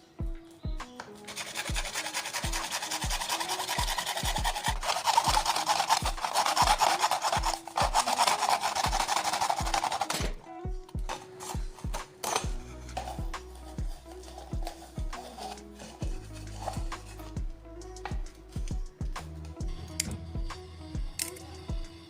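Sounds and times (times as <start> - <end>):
background music with low beat: 0.0 - 22.0
tool scraping a surface: 1.3 - 10.4, 11.1 - 17.4.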